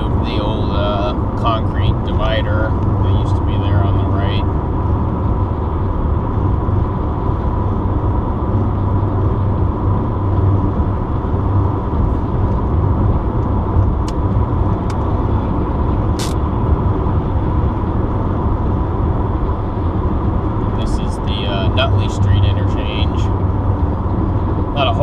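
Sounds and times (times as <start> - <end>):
car road and engine noise: 0.0 - 25.0
faint steady whine: 0.0 - 25.0
sharp click-hiss: 16.2 - 16.4.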